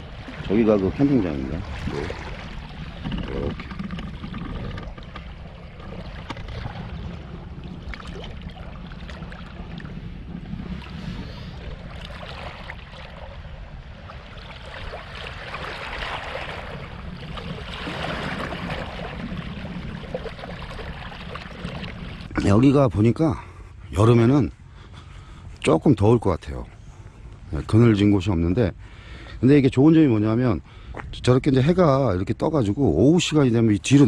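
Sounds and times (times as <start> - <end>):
sea waves washing against rocks: 0.0 - 22.4
wind rumble on microphone: 0.0 - 23.8, 29.6 - 34.0.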